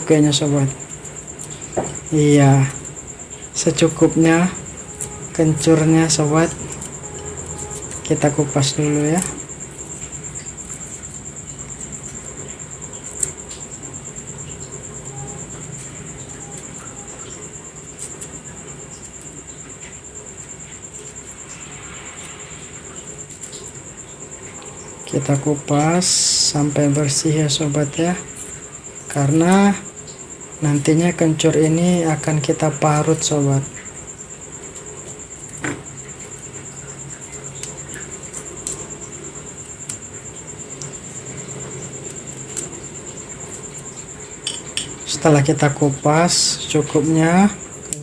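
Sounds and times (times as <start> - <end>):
insect trilling: 0.0 - 48.0
root being peeled: 3.8 - 13.8, 14.5 - 21.6.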